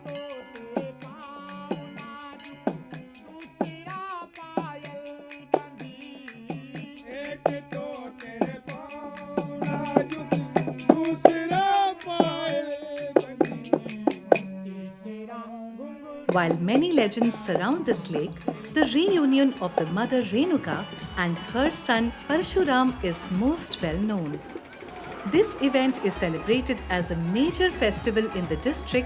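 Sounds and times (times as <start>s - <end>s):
person singing: 0.0s - 14.5s, 16.3s - 24.6s, 25.2s - 29.0s
jingling tambourine-like percussion: 0.0s - 14.6s, 16.3s - 29.0s.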